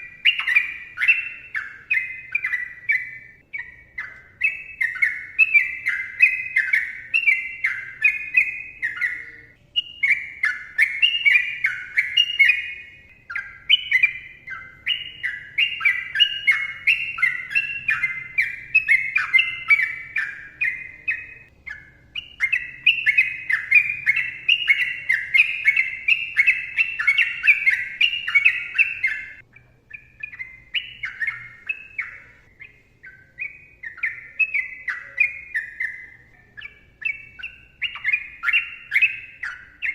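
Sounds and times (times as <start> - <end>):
bird singing rapid chirps: 0.0 - 39.9.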